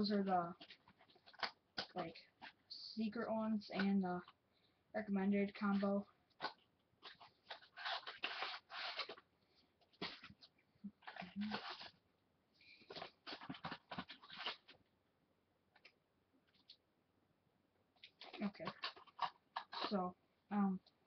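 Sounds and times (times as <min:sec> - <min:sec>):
packaging rustling and scraping: 0:00.6 - 0:02.6, 0:06.4 - 0:09.3, 0:09.9 - 0:12.0, 0:12.8 - 0:14.8, 0:18.0 - 0:20.0.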